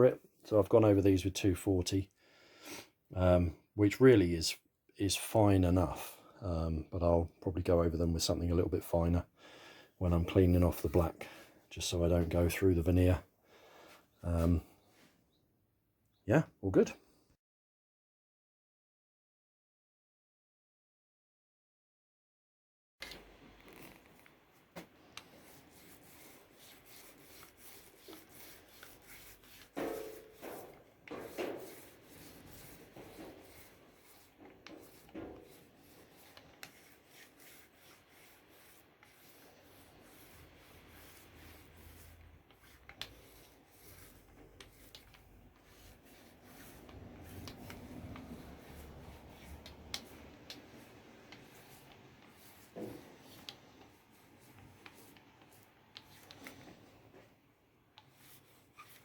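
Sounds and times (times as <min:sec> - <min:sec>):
hand rubbing on wooden cabinet: 0:25.0 - 0:56.7.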